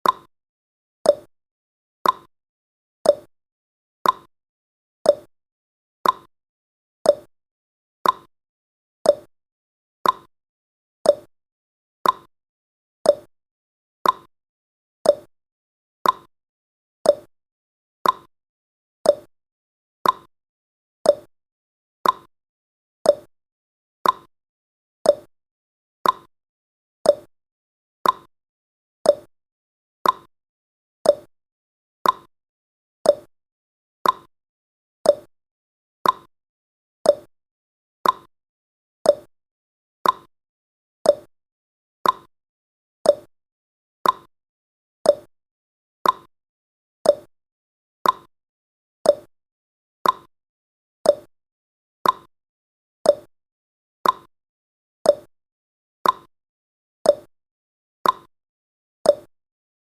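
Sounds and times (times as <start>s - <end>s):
clock tick-tock: 0.0s - 0.3s, 1.1s - 1.3s, 2.0s - 2.3s, 3.1s - 3.3s, 4.0s - 4.3s, 5.1s - 5.3s, 6.0s - 6.3s, 7.1s - 7.3s, 8.0s - 8.3s, 9.1s - 9.3s, 10.0s - 10.3s, 11.1s - 11.3s, 12.0s - 12.3s, 13.1s - 13.3s, 14.0s - 14.3s, 15.0s - 15.3s, 16.0s - 16.3s, 17.1s - 17.3s, 18.0s - 18.3s, 19.0s - 19.3s, 20.0s - 20.3s, 21.0s - 21.3s, 22.0s - 22.3s, 23.0s - 23.3s, 24.0s - 24.3s, 25.0s - 25.3s, 26.0s - 26.3s, 27.0s - 27.3s, 28.0s - 28.3s, 29.0s - 29.3s, 30.0s - 30.3s, 31.0s - 31.3s, 32.0s - 32.3s, 33.0s - 33.3s, 34.0s - 34.3s, 35.0s - 35.3s, 36.0s - 36.3s, 37.0s - 37.3s, 38.0s - 38.3s, 39.0s - 39.3s, 40.0s - 40.3s, 41.0s - 41.3s, 42.0s - 42.3s, 43.0s - 43.3s, 44.0s - 44.3s, 45.0s - 45.3s, 46.0s - 46.3s, 47.0s - 47.3s, 48.0s - 48.3s, 49.0s - 49.3s, 50.0s - 50.3s, 51.1s - 51.3s, 52.0s - 52.3s, 53.1s - 53.3s, 54.0s - 54.3s, 55.1s - 55.3s, 56.0s - 56.3s, 57.1s - 57.3s, 58.0s - 58.3s, 59.1s - 59.3s.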